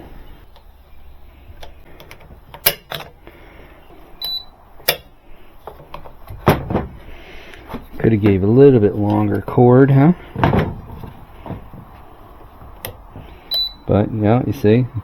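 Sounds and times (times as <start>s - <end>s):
high beep: 4.2s - 4.5s, 13.5s - 13.9s.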